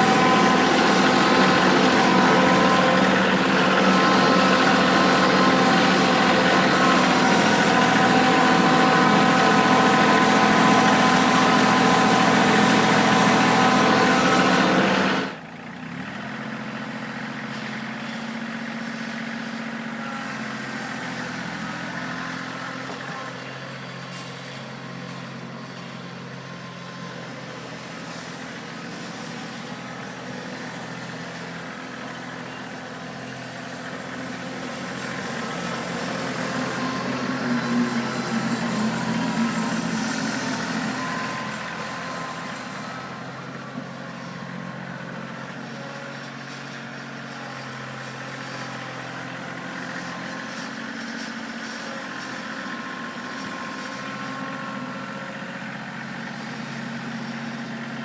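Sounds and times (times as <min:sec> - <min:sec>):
tractor diesel engine running: 0:00.0 - 0:58.0.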